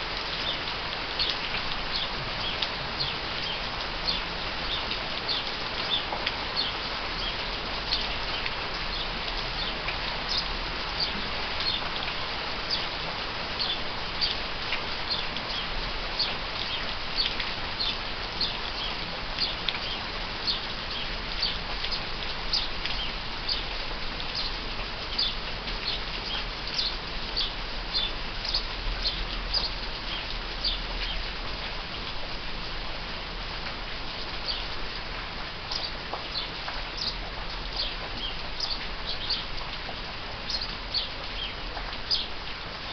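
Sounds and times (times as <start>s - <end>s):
steady rain falling: 0.0s - 42.9s
sparrows chirping: 1.2s - 11.8s, 25.2s - 31.2s, 35.7s - 37.2s, 37.8s - 39.4s, 40.5s - 42.3s.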